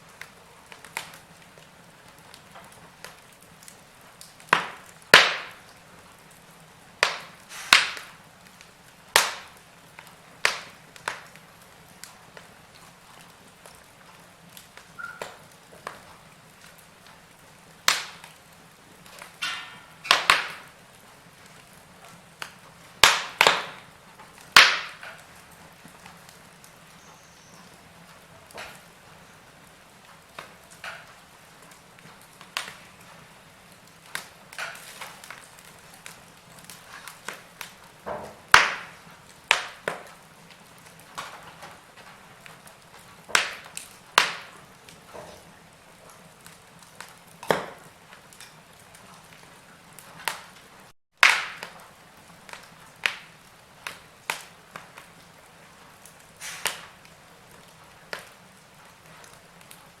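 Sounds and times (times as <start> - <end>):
wood fire crackling: 0.0 - 60.0
faint hiss: 3.4 - 13.1, 55.9 - 57.0.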